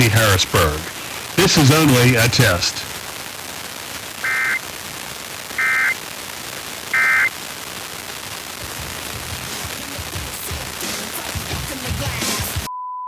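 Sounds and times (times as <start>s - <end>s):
radio hiss: 0.0s - 12.7s
short buzzing data bursts: 4.2s - 4.7s, 5.6s - 6.0s, 6.9s - 7.3s.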